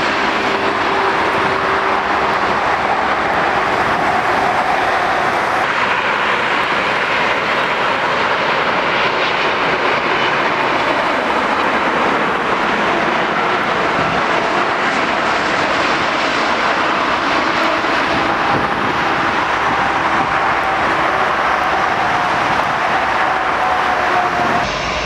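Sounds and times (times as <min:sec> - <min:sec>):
jet engines rushing: 0:00.0 - 0:25.0.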